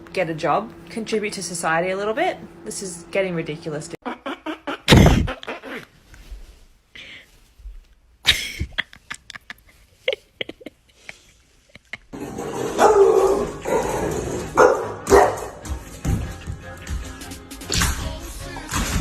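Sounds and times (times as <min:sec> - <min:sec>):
dog barking: 0:12.8 - 0:14.0, 0:14.6 - 0:15.6.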